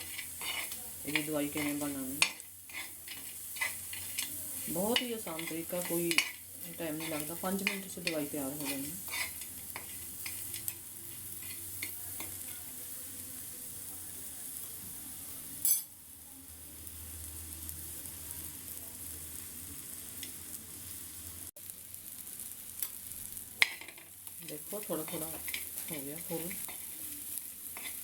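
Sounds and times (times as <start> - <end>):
spoon stirring: 0.0 - 12.6, 24.4 - 28.0
sizzling on a hot griddle: 0.0 - 28.0.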